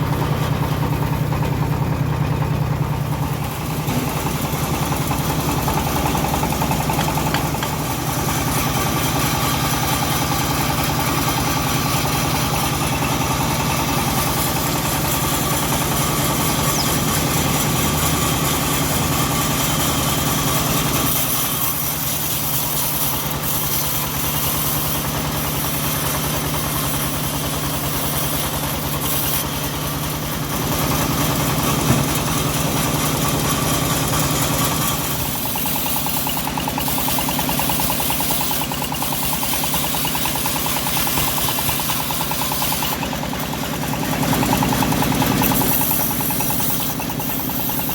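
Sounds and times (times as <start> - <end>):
sawmill engine running: 0.0 - 47.9
sharp knock: 31.8 - 32.4.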